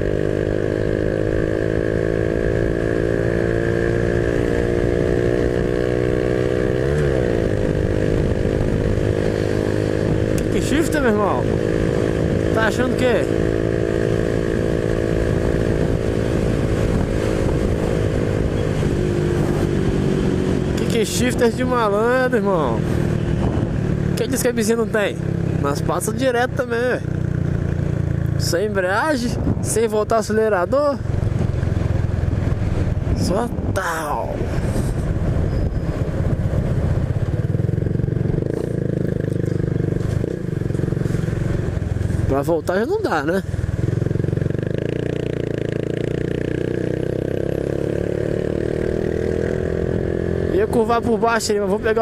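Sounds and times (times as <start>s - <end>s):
motorcycle engine at high revs: 0.0s - 33.6s, 34.4s - 52.0s
wind rumble on microphone: 13.4s - 21.9s, 22.7s - 24.2s, 29.0s - 42.3s.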